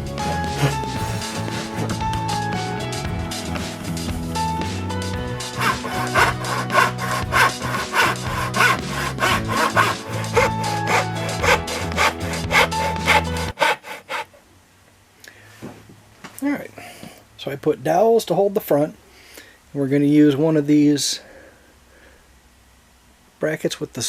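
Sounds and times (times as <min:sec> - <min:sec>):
background music: 0:00.0 - 0:13.7
sandpaper scraping on wood: 0:00.2 - 0:02.7, 0:05.4 - 0:14.3.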